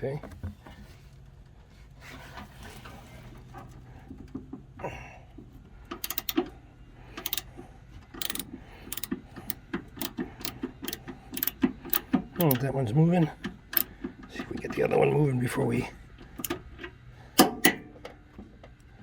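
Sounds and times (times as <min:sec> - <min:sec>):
socket ratchet clicking: 0:06.0 - 0:06.5, 0:07.2 - 0:07.5, 0:08.2 - 0:12.6, 0:13.7 - 0:13.9, 0:16.4 - 0:16.6.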